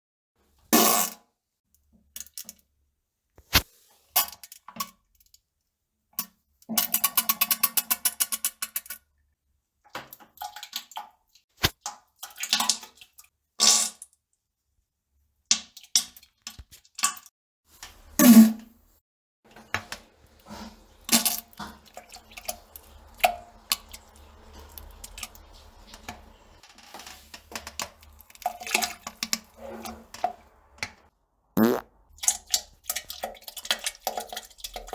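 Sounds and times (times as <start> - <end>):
fart sound effects: 31.6 - 31.9.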